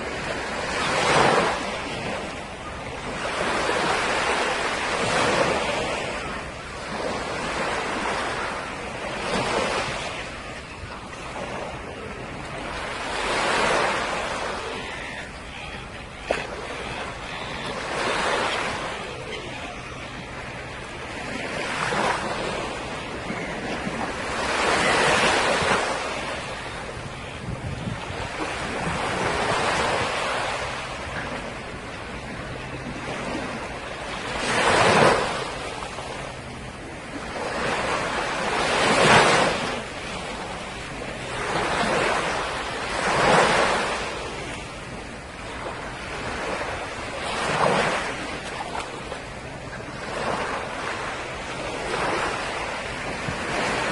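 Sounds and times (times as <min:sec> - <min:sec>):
small waves breaking on a beach: 0:00.0 - 0:53.9
wind on the microphone: 0:16.3 - 0:50.7.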